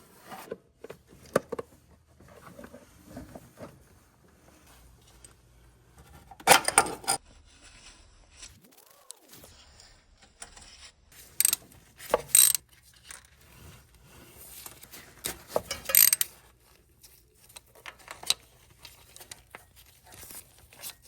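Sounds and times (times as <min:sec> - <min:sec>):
metal tools clinking: 0:06.4 - 0:07.2, 0:15.4 - 0:16.4.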